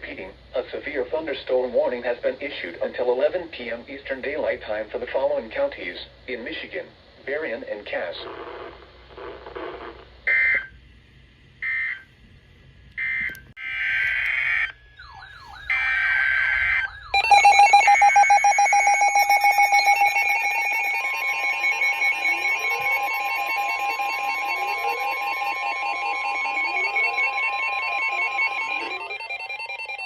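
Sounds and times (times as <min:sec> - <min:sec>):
loud pulsing electronic alert tone: 0:13.0 - 0:30.0
short digital data squawks: 0:15.7 - 0:25.7.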